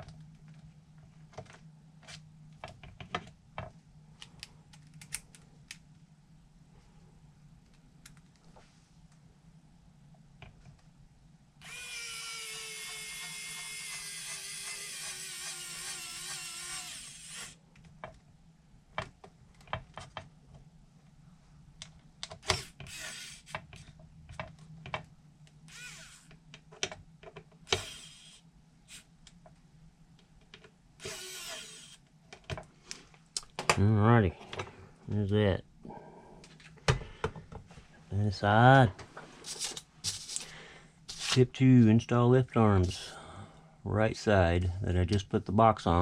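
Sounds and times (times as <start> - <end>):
power driver whine: 25.7 - 26.3, 27.7 - 29.1, 31.0 - 32.0.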